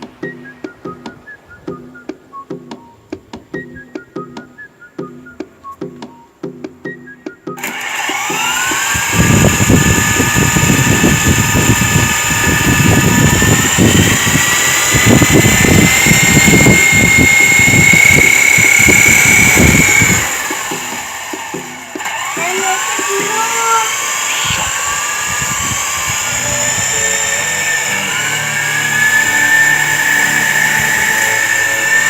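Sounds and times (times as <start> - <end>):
rc helicopter motor whine: 7.6 - 32.0
wind buffeting microphone: 8.4 - 20.9, 24.4 - 27.4.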